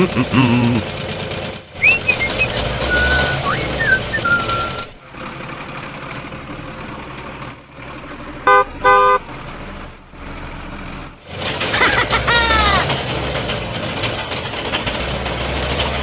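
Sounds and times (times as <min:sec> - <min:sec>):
vehicle horn toots: 0:08.5 - 0:09.2.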